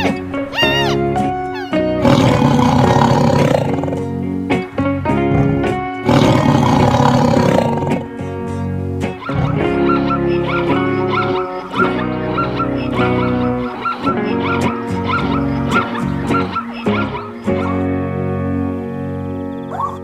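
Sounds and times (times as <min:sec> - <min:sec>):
harsh animal calls: 0:00.0 - 0:04.2, 0:05.2 - 0:08.2, 0:09.2 - 0:18.0
background music: 0:00.0 - 0:20.0.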